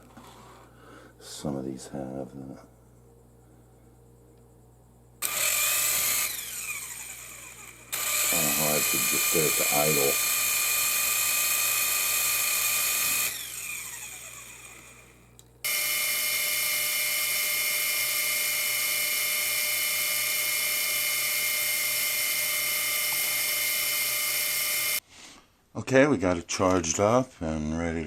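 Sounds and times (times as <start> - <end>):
toy helicopter motors whining: 5.2 - 25.0.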